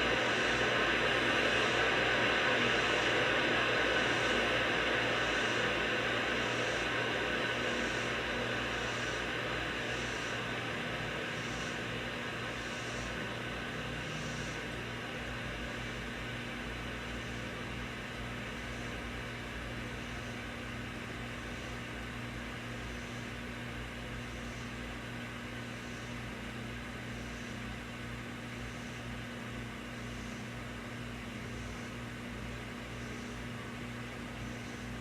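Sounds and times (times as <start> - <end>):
tube amplifier hissing: 0.0 - 19.2
low mains hum: 0.0 - 35.0.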